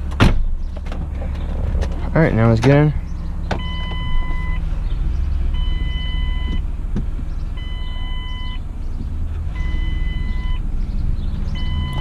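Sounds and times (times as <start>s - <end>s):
car engine idling: 0.0s - 12.0s
dashboard warning chime: 3.6s - 4.6s, 5.6s - 6.6s, 7.6s - 8.6s, 9.6s - 10.6s, 11.6s - 12.0s.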